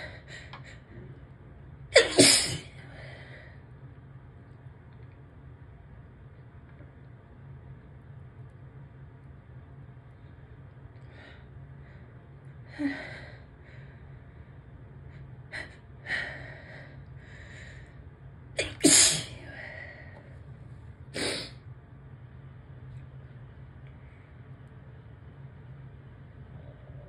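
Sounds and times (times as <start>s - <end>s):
person sneezing: 2.0s - 2.8s, 18.6s - 19.4s.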